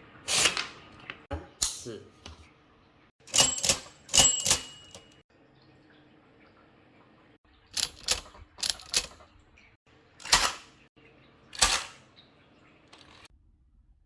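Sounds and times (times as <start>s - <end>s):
typewriter key strikes: 3.3s - 5.2s.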